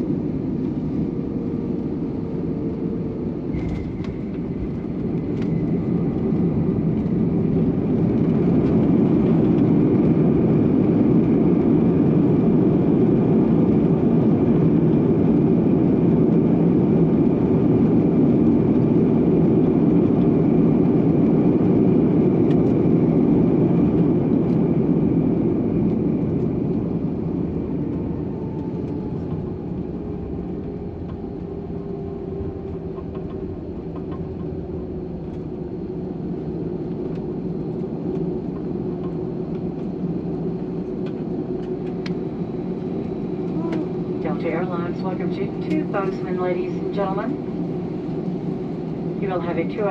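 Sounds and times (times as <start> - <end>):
jet engine rumble in cabin: 0.0 - 49.9.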